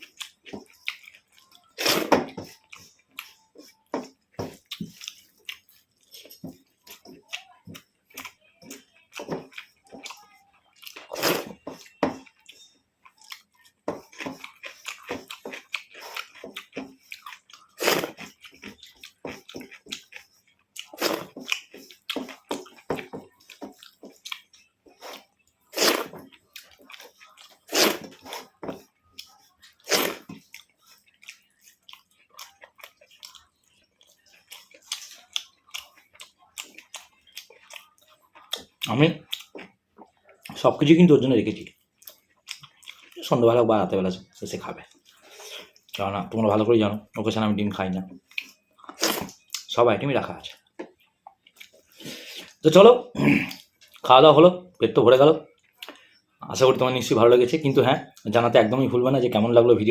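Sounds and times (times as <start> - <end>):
person chewing food: 0.0 - 54.1, 55.4 - 56.8
mouth smacks: 53.2 - 53.7.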